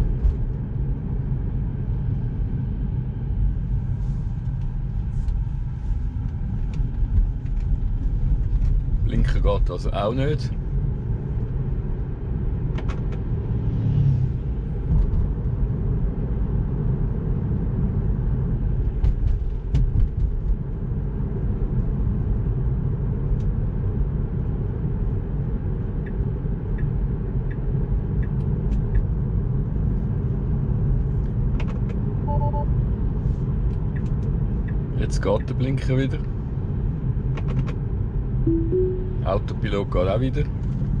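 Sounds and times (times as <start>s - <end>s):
road and tyre rumble in car: 0.0s - 41.0s
short electronic beep: 32.3s - 32.7s, 38.5s - 39.4s.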